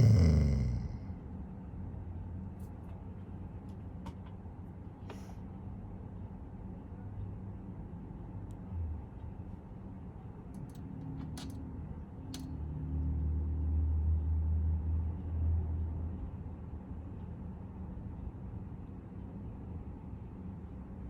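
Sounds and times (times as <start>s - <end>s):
dog snoring: 0.0s - 1.0s.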